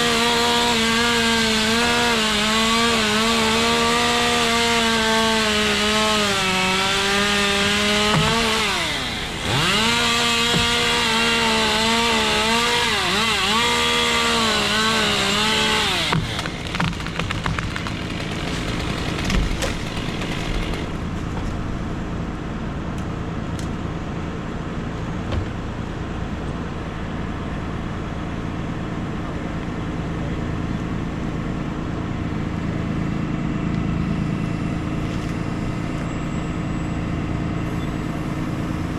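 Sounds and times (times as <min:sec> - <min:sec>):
chainsaw cutting limb: 0:00.0 - 0:21.4
sharp cracks and knocks: 0:15.8 - 0:21.7.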